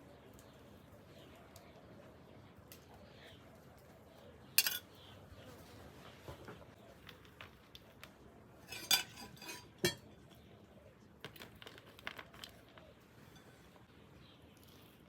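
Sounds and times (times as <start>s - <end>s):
cutlery clinking against dishes: 4.6s - 4.9s, 8.7s - 10.4s.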